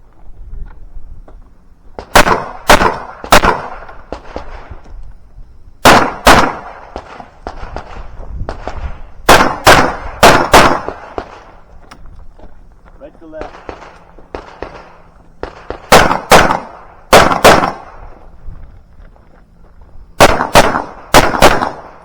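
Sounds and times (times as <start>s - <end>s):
pistol shots: 2.0s - 4.7s, 5.8s - 11.6s, 13.3s - 18.2s, 20.2s - 22.0s.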